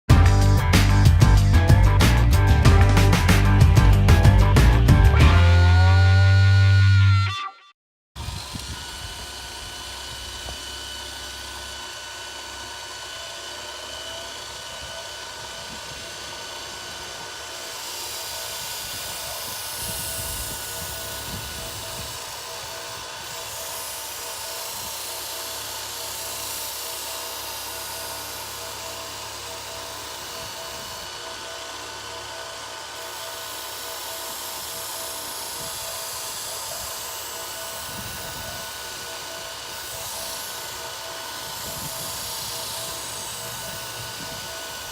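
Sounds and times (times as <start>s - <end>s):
knife-sharpening machine whine: 0.1s - 7.5s, 8.2s - 44.9s
blade grinding hiss: 13.5s - 44.9s.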